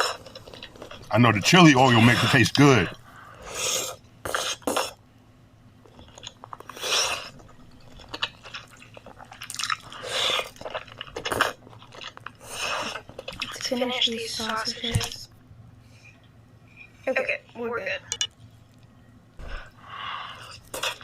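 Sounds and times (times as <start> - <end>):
wet chewing: 0.0 - 1.2, 5.8 - 13.8, 20.2 - 21.0.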